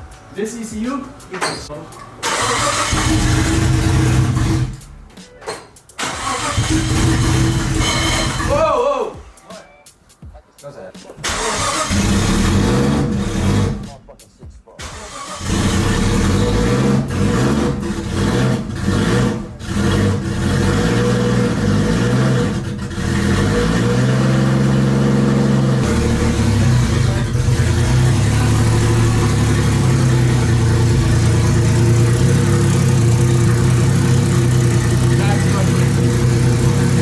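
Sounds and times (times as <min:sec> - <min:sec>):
engine cracks: 0:01.5 - 0:04.9, 0:05.9 - 0:08.6, 0:11.2 - 0:14.0, 0:14.8 - 0:37.0
car engine revving: 0:02.2 - 0:04.9, 0:06.0 - 0:08.6, 0:11.2 - 0:14.0, 0:14.8 - 0:37.0
car engine idling roughly: 0:24.6 - 0:37.0.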